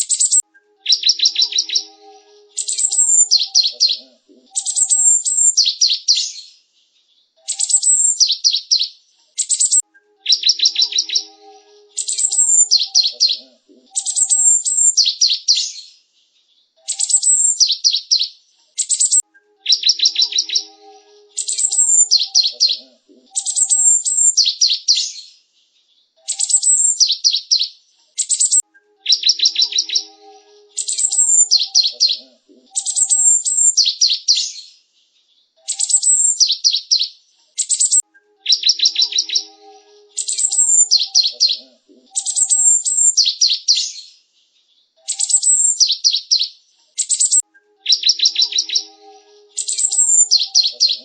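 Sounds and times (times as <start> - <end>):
tit singing: 0.4 - 5.5, 9.8 - 14.8, 19.2 - 24.2, 28.6 - 33.5, 38.0 - 42.9, 47.4 - 51.0.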